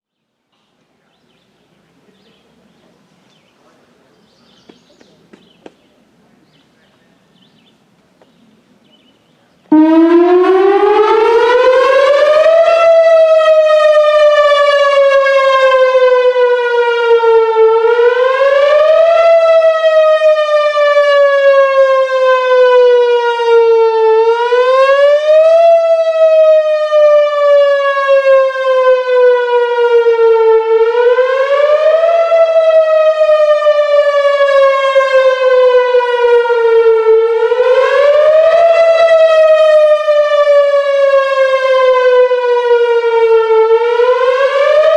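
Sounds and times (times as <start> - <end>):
warning siren wailing: 9.7 - 44.9.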